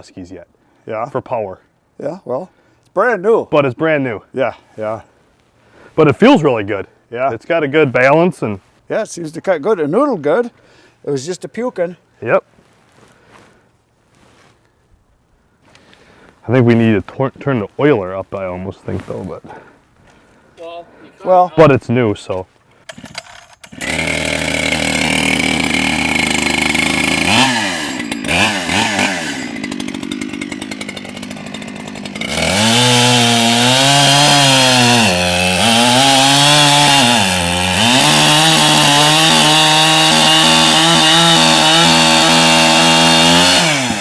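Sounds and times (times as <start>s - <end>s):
chainsaw cutting wood: 22.7s - 44.0s.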